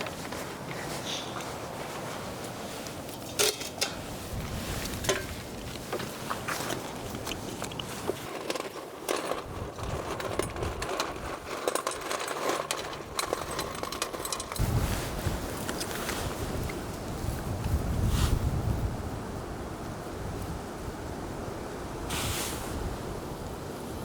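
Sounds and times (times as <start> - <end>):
gusty wind on microphone: 4.0 - 8.1, 13.0 - 24.0.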